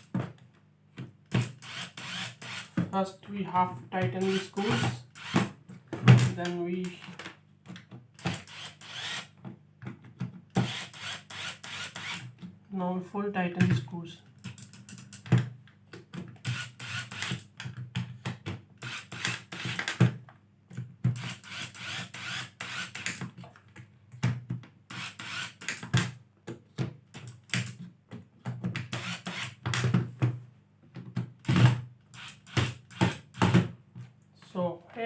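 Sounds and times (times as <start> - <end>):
electric screwdriver motor: 1.4 - 2.8, 4.2 - 5.4, 8.2 - 9.3, 10.6 - 12.2, 16.4 - 17.4, 18.8 - 19.9, 21.2 - 23.2, 24.9 - 25.8, 28.9 - 29.6, 32.2 - 33.4.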